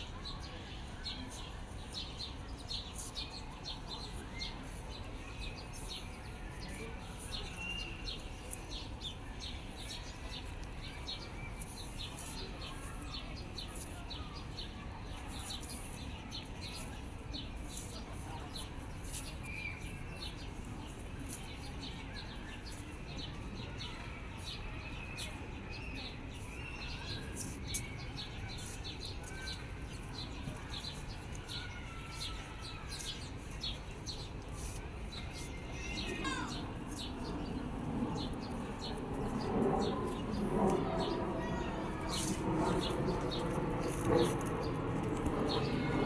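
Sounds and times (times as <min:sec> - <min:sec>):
small birds chirping: 0:19.0 - 0:46.0
voices: 0:20.4 - 0:46.0.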